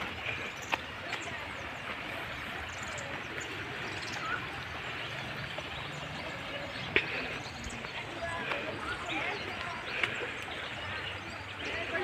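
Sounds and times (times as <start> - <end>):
outdoor background noise: 0.0 - 12.0.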